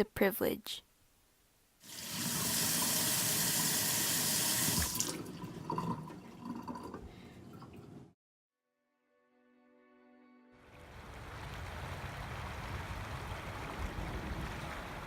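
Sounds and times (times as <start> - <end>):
tap water running into sink: 1.9 - 8.1.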